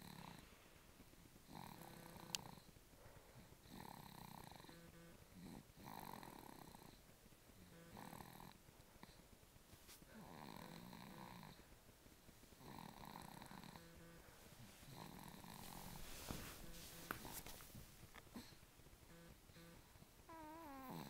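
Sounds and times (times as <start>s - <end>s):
baby snoring: 0.0s - 0.5s, 1.5s - 2.7s, 3.4s - 7.0s, 7.6s - 9.2s, 10.1s - 11.7s, 12.6s - 14.2s, 14.8s - 17.6s, 18.3s - 21.0s.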